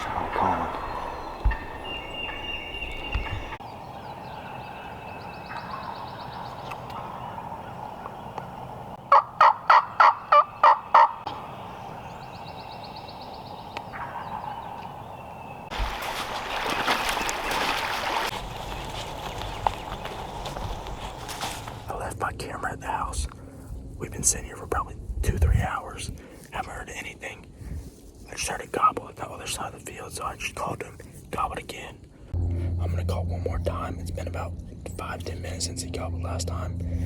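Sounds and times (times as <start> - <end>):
turkey yelps: 9.1 - 11.2.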